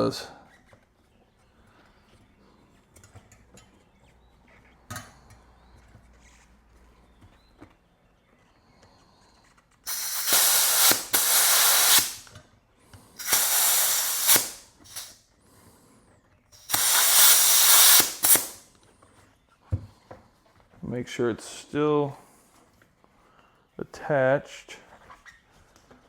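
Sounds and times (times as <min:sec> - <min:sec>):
compressed air hissing: 0:09.9 - 0:12.3, 0:13.2 - 0:15.2, 0:16.6 - 0:18.7.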